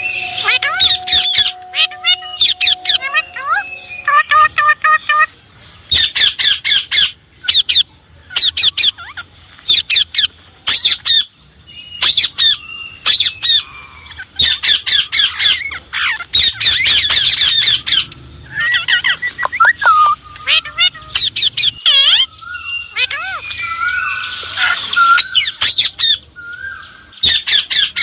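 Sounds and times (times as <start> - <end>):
parrot squawking: 0.0 - 5.3, 12.0 - 26.3, 27.2 - 28.0.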